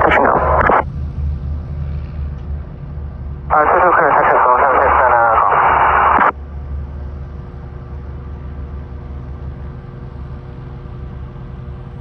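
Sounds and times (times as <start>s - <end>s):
radio voice: 0.0s - 0.8s, 3.5s - 6.3s
faint steady tones: 0.0s - 6.3s
low engine hum: 0.0s - 12.0s.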